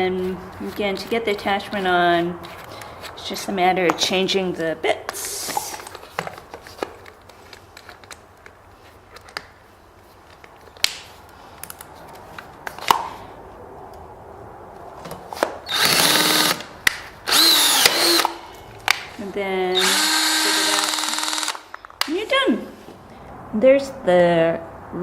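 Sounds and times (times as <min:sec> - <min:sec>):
power drill whining: 0:15.7 - 0:16.7, 0:17.3 - 0:18.4, 0:19.8 - 0:21.7.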